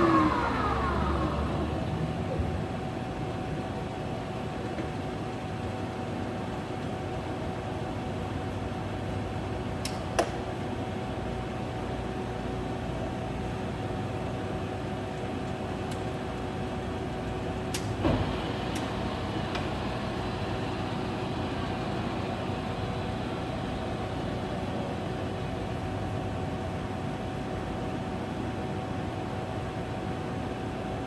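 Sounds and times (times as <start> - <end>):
lathe spindle running: 0.0 - 3.0, 18.0 - 26.4.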